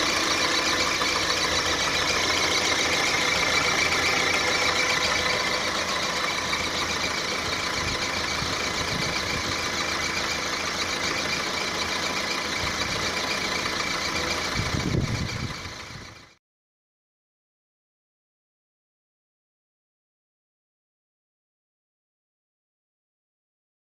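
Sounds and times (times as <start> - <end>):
car engine idling: 0.0 - 16.4.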